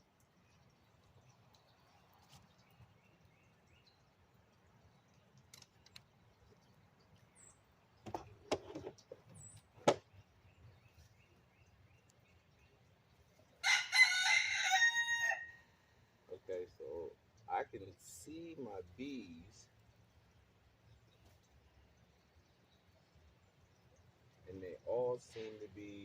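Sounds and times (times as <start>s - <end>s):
rooster crowing: 13.6s - 15.7s.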